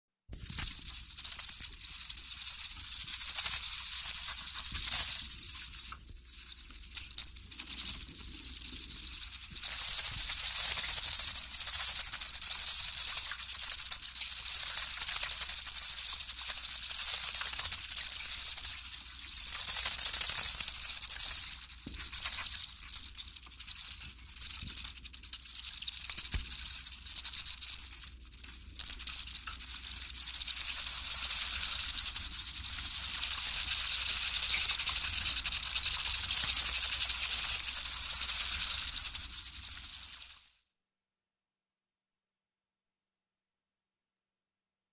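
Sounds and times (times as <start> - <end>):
bats chittering: 0.6 - 5.9, 28.9 - 40.4.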